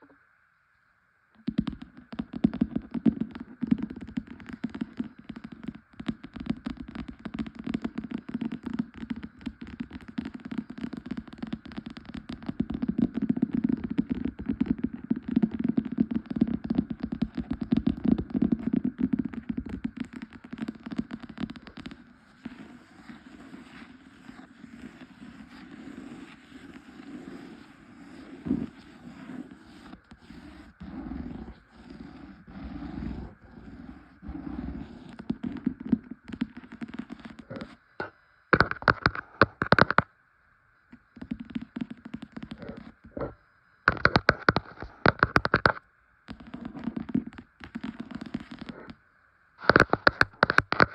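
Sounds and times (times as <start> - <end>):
tapping and scratching on books: 1.4 - 40.1, 41.1 - 49.0, 49.6 - 50.9.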